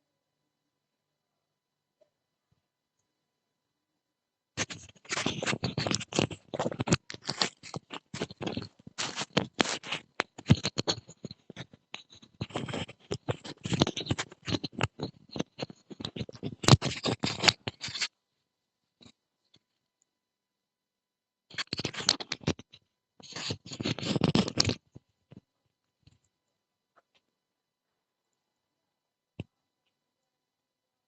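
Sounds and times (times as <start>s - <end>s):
scratching and rustling on microphone: 4.6s - 18.2s, 21.5s - 26.3s.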